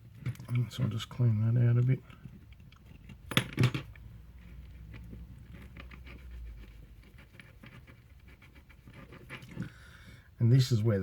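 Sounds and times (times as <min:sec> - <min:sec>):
small hand tool clicking and scratching: 0:01.7 - 0:09.7.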